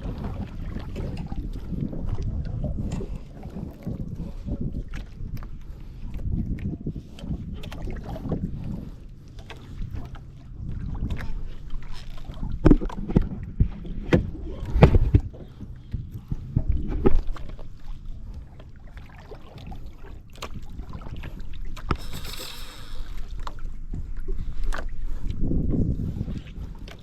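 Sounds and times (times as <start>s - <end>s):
wind rush on microphone: 0.0s - 9.0s, 12.3s - 27.0s
water on boat: 0.0s - 27.0s
brief hiss: 22.0s - 23.4s.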